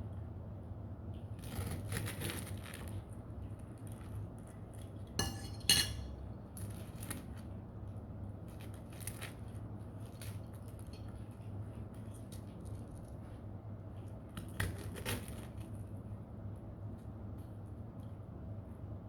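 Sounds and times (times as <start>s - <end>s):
cutlery clinking on plate: 5.2s - 6.2s
tableware scraping and rustling: 5.2s - 6.2s.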